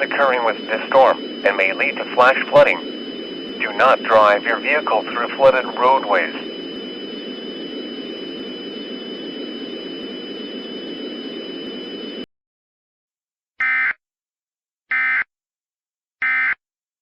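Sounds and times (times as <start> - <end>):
steady hiss with high whine: 0.0 - 12.2
warbling data bursts: 0.0 - 12.2.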